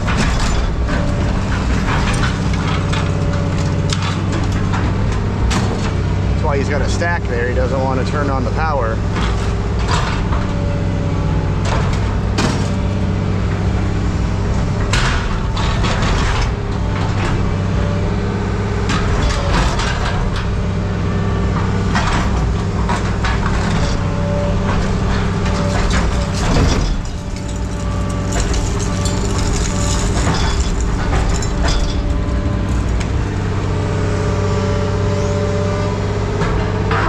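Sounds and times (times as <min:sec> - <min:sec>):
scrap metal clanking: 0:21.6 - 0:35.5.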